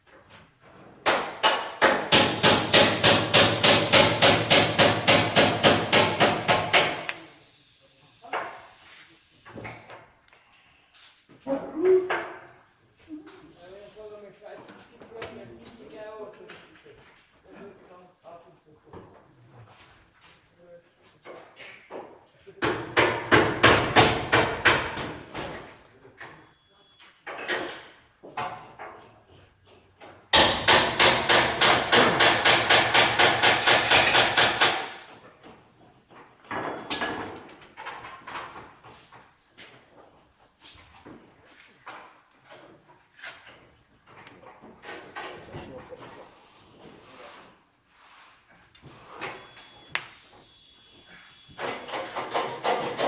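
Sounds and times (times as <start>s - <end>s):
hammer striking steel sheet: 1.9s - 7.1s.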